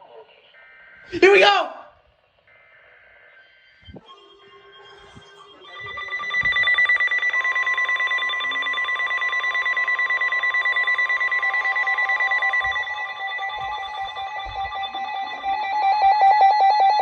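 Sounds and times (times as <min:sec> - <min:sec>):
steady electronic tone: 0:02.5 - 0:17.0
pulsing electronic alert tone: 0:03.7 - 0:17.0.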